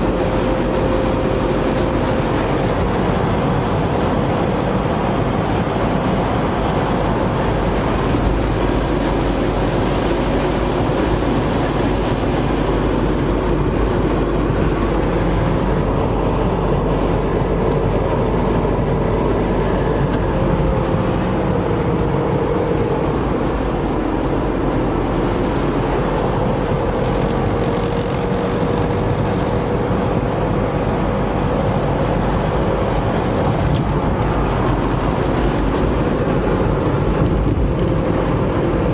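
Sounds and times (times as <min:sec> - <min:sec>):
car engine and road noise: 0:00.0 - 0:38.9.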